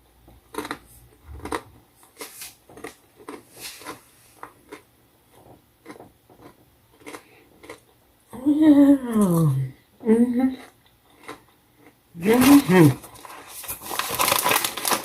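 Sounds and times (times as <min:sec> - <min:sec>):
chip being crunched and chewed: 0:00.5 - 0:07.9, 0:10.6 - 0:15.0.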